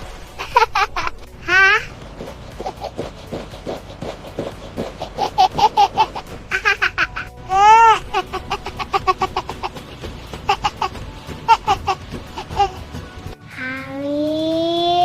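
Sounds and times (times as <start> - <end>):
background music: 0.0 - 15.0
baby giggling: 0.4 - 1.9, 2.6 - 3.0, 5.0 - 13.0
baby squealing: 0.4 - 1.9, 5.1 - 12.9.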